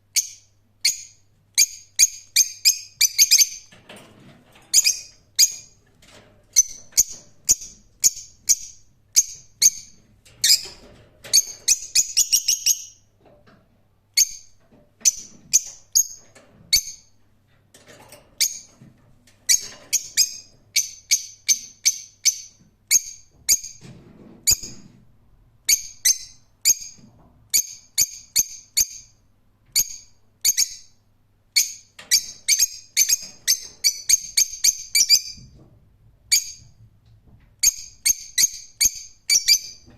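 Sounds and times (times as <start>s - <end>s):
lovebird shrill chirps: 11.4s - 13.0s.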